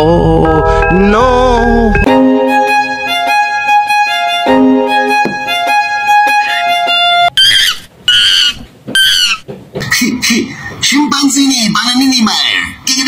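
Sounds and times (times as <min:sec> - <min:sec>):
plucked strings: 0:01.9 - 0:07.3
violin melody: 0:02.0 - 0:07.4
short high squeaks: 0:07.4 - 0:09.5.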